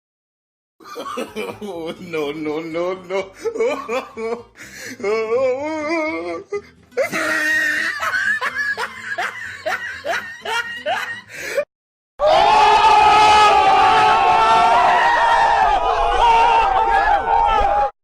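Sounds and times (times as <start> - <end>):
person laughing: 0.8 - 11.6.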